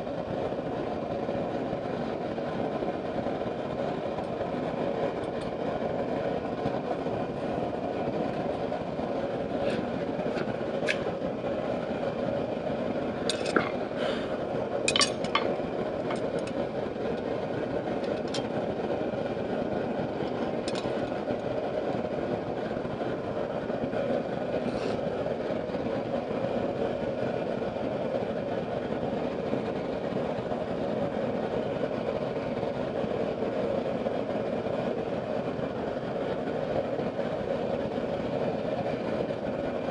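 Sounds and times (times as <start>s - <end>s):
forge roaring: 0.3s - 27.5s.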